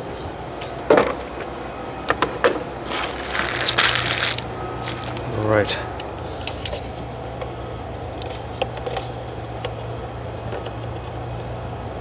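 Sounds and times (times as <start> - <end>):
steady low hum: 0.0 - 12.0
small tools clicking and tapping: 2.9 - 5.3, 6.4 - 12.0.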